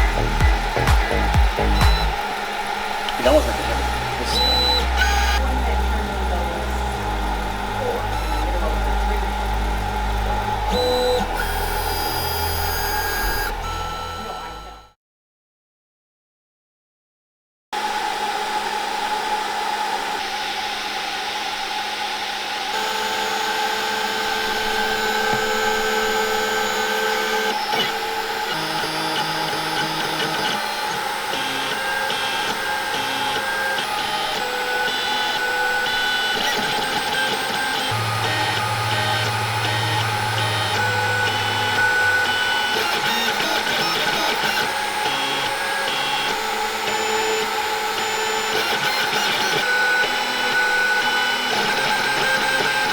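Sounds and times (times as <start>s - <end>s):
fan hum: 0.0s - 13.6s, 37.9s - 42.8s
stepper motors whining: 0.0s - 14.9s, 18.0s - 52.9s.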